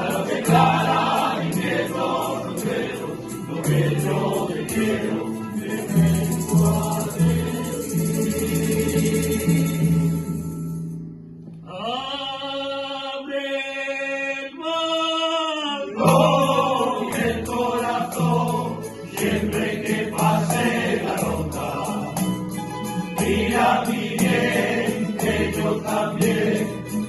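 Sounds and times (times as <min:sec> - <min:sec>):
choir holding long notes: 0:00.0 - 0:10.6, 0:15.8 - 0:22.3, 0:23.1 - 0:27.0
jingling percussion: 0:00.0 - 0:11.0, 0:16.0 - 0:27.0
strummed and plucked strings: 0:00.0 - 0:11.8, 0:16.0 - 0:27.0.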